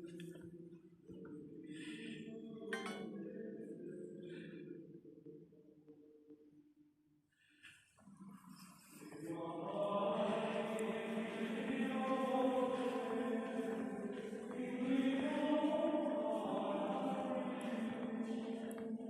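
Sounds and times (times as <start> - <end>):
chanted singing with held notes: 9.0 - 19.0.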